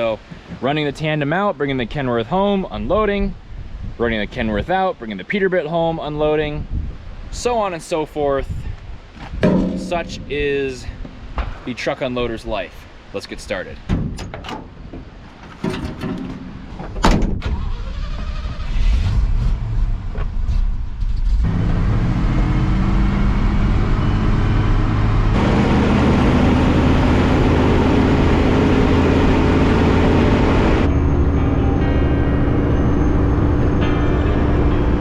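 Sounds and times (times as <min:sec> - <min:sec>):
vehicle door slamming: 0:13.9 - 0:17.6
truck engine running: 0:21.4 - 0:35.0.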